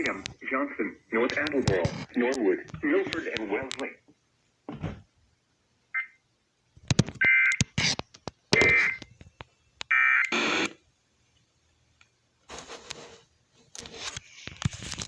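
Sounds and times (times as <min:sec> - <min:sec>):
sharp clicks and noise bursts: 0:00.0 - 0:00.5, 0:01.2 - 0:04.0, 0:06.8 - 0:10.8.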